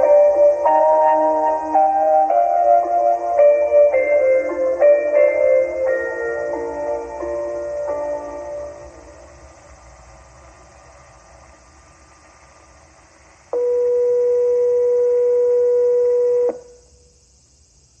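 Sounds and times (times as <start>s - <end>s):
long steady beep: 0.0s - 9.3s, 13.5s - 17.2s.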